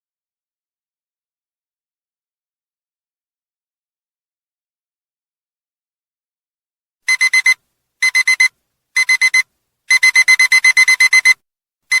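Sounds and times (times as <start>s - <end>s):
digital alarm beeping: 7.1s - 12.0s.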